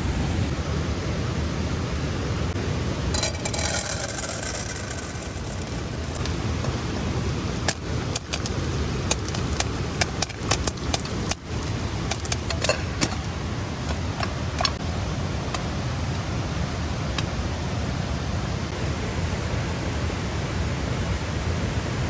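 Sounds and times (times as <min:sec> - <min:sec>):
heavy rain: 0:00.0 - 0:22.0
sharp clicks and taps: 0:07.5 - 0:14.8.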